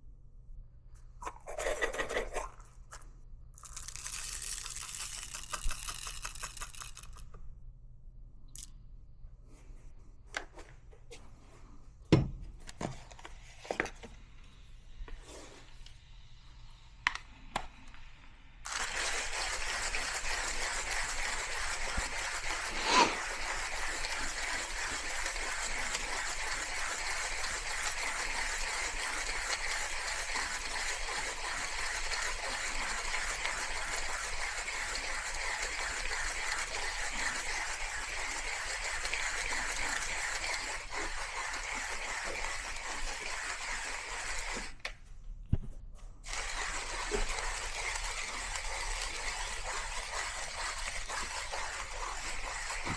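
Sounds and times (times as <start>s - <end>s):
coffee grinder crunching beans: 1.2s - 7.4s, 18.7s - 44.8s, 46.2s - 52.9s.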